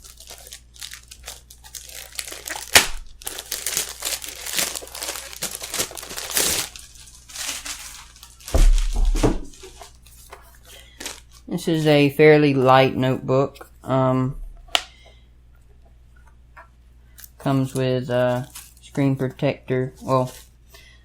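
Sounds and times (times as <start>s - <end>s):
packaging crinkling: 0.0s - 12.2s, 17.1s - 19.0s
low thump: 8.5s - 9.5s.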